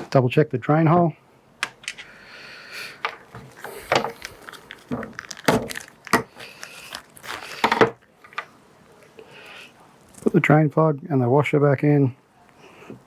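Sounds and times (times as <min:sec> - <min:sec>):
rustling: 0:03.0 - 0:09.1.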